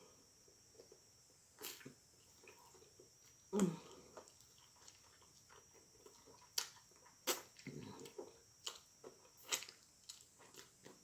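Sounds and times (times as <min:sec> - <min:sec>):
chewing noises: 0:04.1 - 0:11.0.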